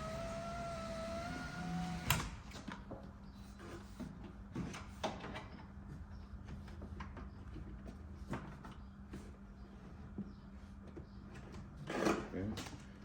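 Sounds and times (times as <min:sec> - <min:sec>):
power window motor whining: 0:00.0 - 0:02.4.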